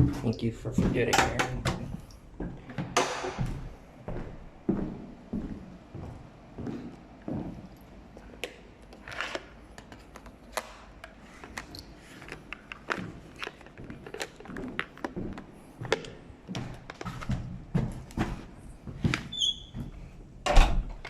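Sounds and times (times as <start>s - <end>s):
footsteps on hard floor: 0.0s - 8.3s, 12.1s - 20.2s.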